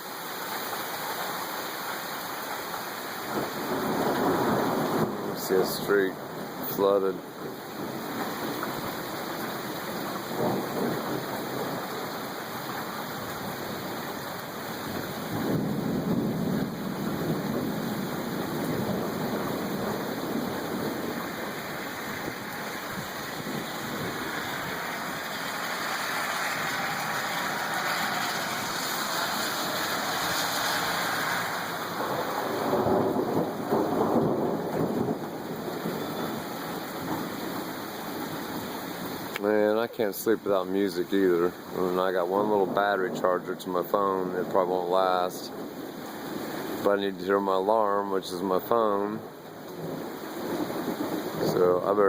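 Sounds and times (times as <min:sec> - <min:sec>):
heavy rain pouring: 0:00.0 - 0:52.0
thunder rumbling: 0:03.2 - 0:38.6, 0:47.4 - 0:52.0.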